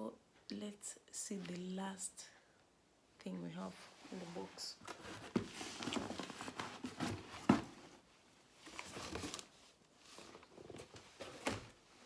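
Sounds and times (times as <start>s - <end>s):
rustling in cardboard box: 3.7s - 12.0s.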